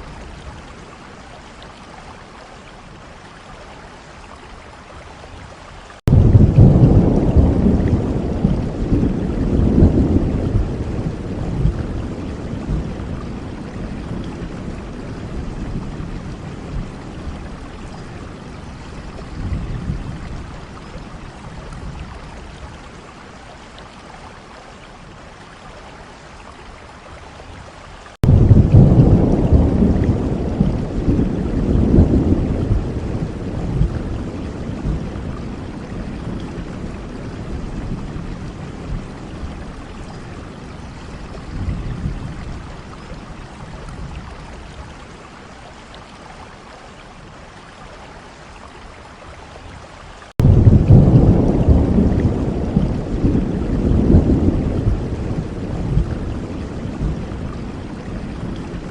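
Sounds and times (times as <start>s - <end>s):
steady rain: 0.0s - 58.9s
rolling thunder: 6.1s - 17.7s, 28.2s - 40.6s, 50.4s - 58.9s.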